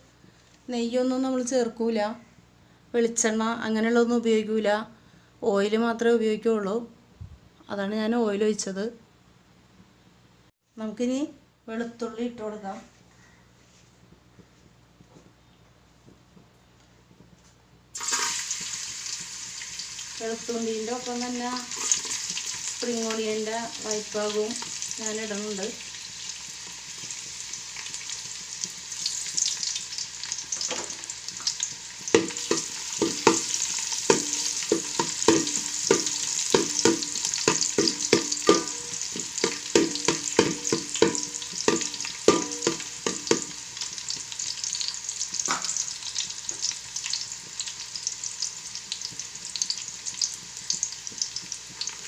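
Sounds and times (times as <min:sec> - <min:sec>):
garlic sizzling in hot oil: 0:18.0 - 0:52.0
utensil tapping a pan: 0:31.5 - 0:44.3.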